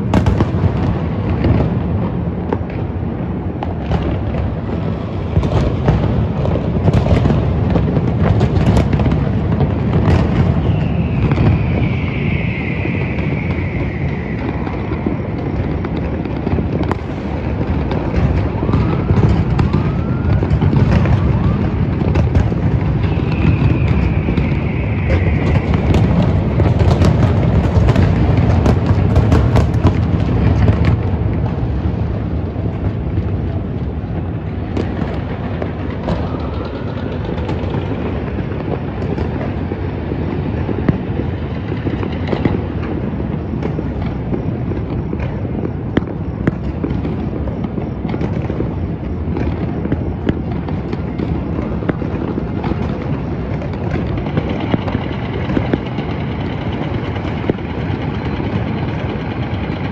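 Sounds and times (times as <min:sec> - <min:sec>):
fireworks pops and bangs: 0:00.0 - 0:59.9
fireworks whistling: 0:00.0 - 0:59.9
distant booms rumbling: 0:12.7 - 0:40.3.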